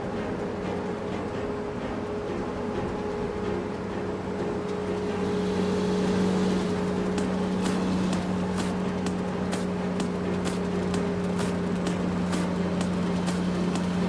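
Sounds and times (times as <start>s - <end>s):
farm machinery engine humming: 0.0s - 14.0s.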